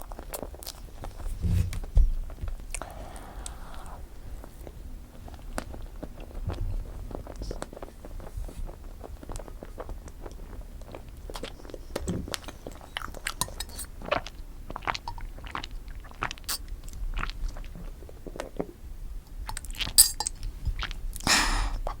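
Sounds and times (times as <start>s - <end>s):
chewing cake: 0.0s - 1.2s, 2.7s - 22.0s.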